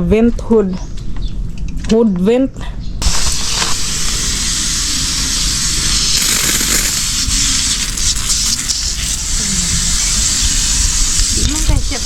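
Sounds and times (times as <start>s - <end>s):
pressure washer spraying water: 3.0s - 12.0s.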